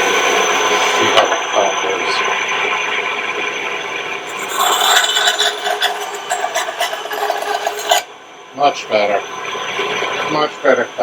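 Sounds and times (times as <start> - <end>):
bandsaw cutting wood: 4.3 - 8.1
bandsaw humming: 4.3 - 8.1.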